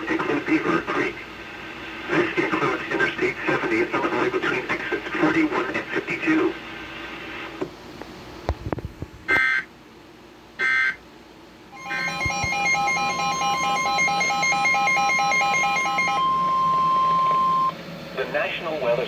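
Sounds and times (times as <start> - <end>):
high-pitched alert tone: 11.8 - 17.7
electronic data squawks: 11.8 - 17.8
fast alternating beeping: 11.8 - 17.8.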